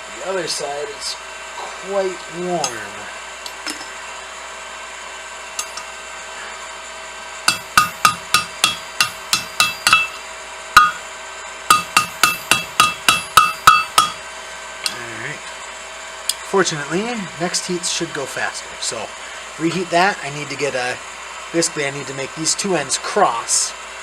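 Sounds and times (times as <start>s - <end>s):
hammer striking steel on anvil: 2.6s - 3.9s, 5.6s - 5.9s, 7.5s - 11.1s, 11.7s - 14.2s.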